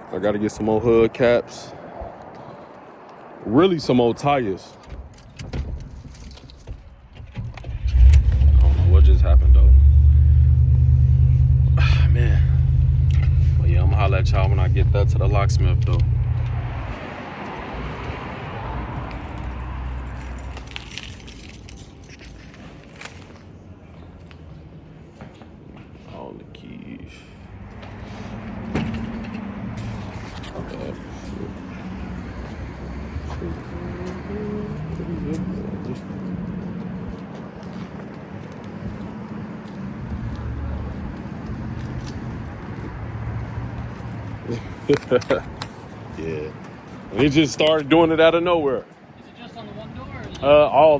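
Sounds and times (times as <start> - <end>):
car engine rumble: 5.8 - 21.8, 27.4 - 47.4.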